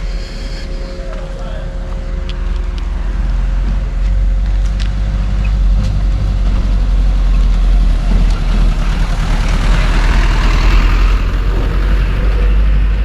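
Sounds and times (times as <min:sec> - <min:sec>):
vehicle engine rumbling: 0:00.0 - 0:13.0.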